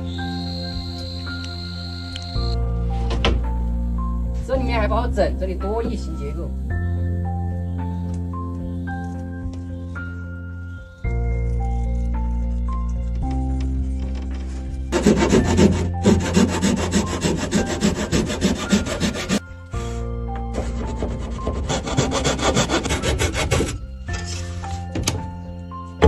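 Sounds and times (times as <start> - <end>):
hand saw cutting wood: 14.9 - 19.4, 20.5 - 23.8.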